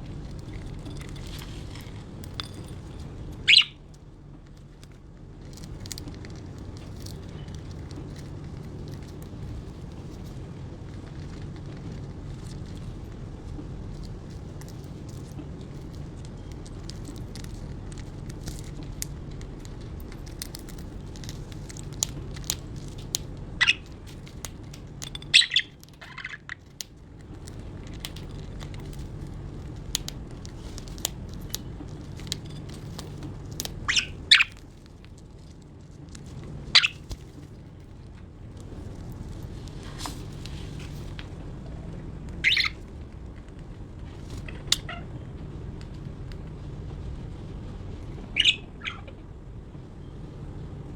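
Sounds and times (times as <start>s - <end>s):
birds nibbling food clicks: 0.0s - 41.3s
bird chirps: 3.4s - 3.8s, 23.6s - 23.9s, 25.3s - 26.6s, 33.9s - 34.6s, 36.7s - 37.0s, 42.4s - 42.8s, 48.3s - 49.2s.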